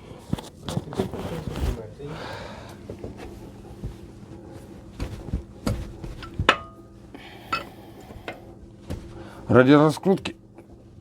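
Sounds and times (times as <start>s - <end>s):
metal tools striking metal: 7.5s - 7.8s.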